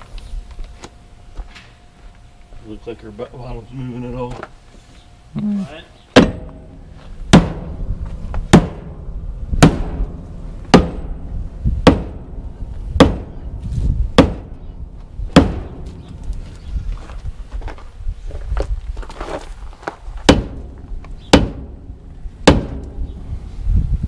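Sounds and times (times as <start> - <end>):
sledgehammer striking metal wheel: 6.2 - 7.8, 8.5 - 13.5, 14.2 - 14.6, 15.3 - 16.1, 20.3 - 23.1.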